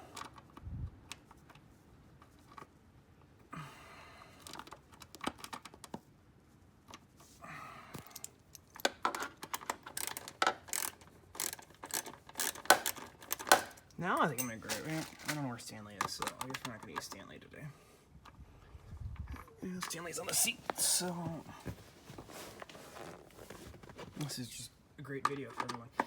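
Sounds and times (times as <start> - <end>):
ratchet clicking: 9.8 - 13.6
handling rustle: 11.7 - 17.3, 19.2 - 24.6
metal tool clinks: 14.3 - 15.2.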